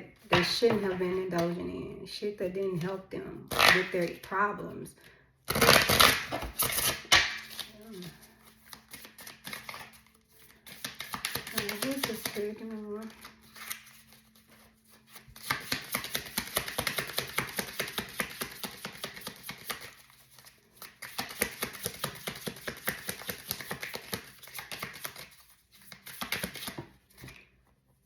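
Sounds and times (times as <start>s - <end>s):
cards being shuffled: 5.5s - 27.7s.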